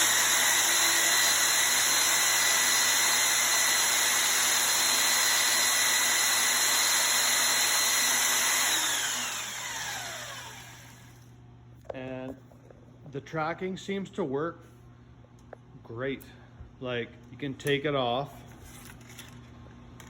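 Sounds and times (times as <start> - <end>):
belt grinder motor whine: 0.0 - 11.3.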